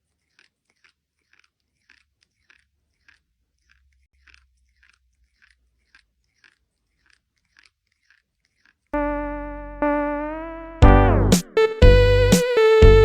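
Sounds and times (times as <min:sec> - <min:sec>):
crunchy chewing: 0:00.0 - 0:08.9.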